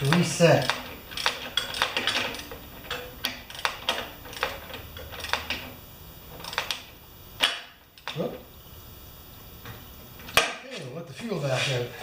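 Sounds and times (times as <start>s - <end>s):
socket ratchet clicking: 0.0s - 5.6s.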